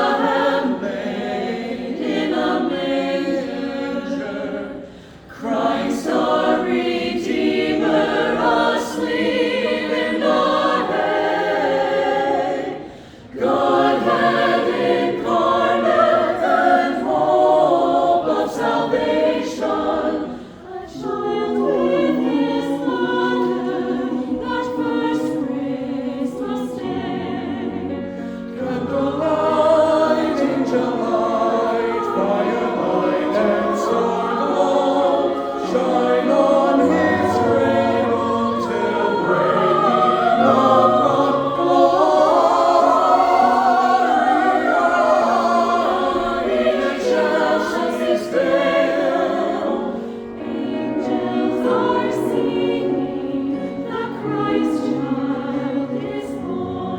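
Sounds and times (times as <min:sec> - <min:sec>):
choir singing a carol: 0:00.0 - 0:56.9.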